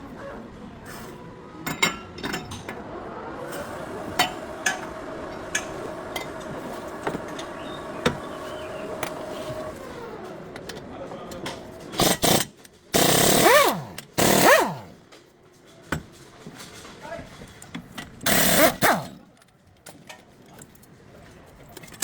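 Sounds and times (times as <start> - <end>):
metal tools clinking and knocking: 1.6 - 2.8.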